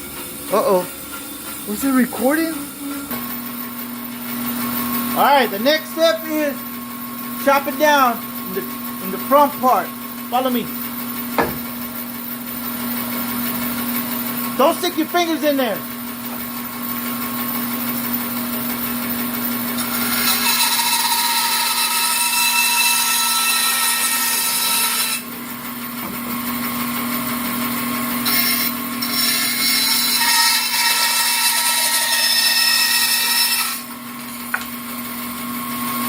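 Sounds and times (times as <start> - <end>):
motor hum: 0.0 - 20.2
power saw cutting wood: 0.0 - 36.0.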